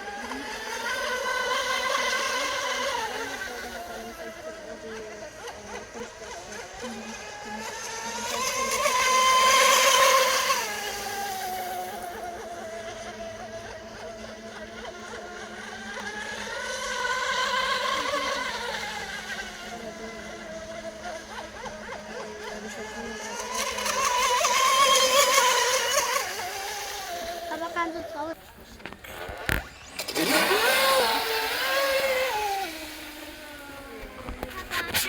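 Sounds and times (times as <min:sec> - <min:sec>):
rc boat motor whining: 0:00.0 - 0:35.0.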